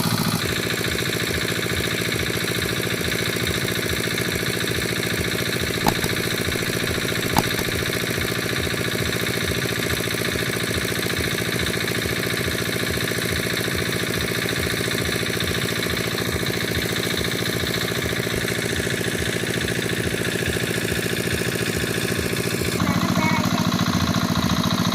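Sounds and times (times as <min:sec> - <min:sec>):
short sharp clicks: 0:05.8 - 0:08.0
small engine running: 0:05.8 - 0:08.1.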